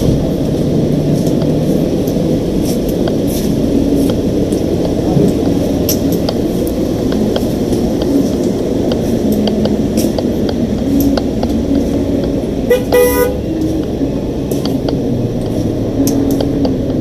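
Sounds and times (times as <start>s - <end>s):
road traffic rumble: 0.0s - 17.0s
vehicle horn toot: 12.7s - 13.5s.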